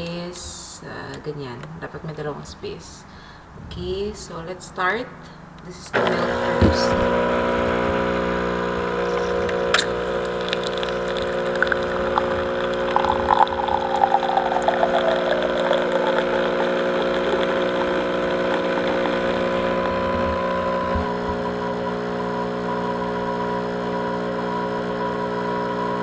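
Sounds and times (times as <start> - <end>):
coffee machine pump humming: 6.0 - 25.8.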